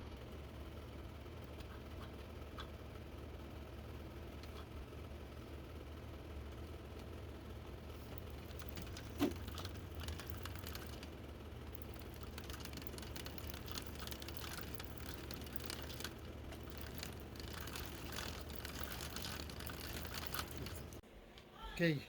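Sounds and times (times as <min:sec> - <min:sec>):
motorized bicycle engine idling: 0:00.0 - 0:21.0
chain clattering and clicking: 0:08.0 - 0:11.1, 0:11.7 - 0:21.0.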